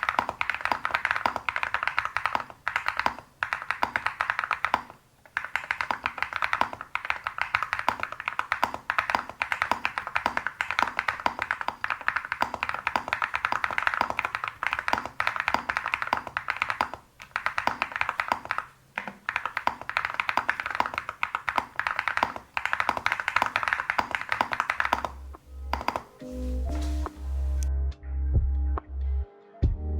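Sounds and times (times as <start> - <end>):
mechanical keyboard typing: 0.0 - 27.6
music: 25.5 - 29.9.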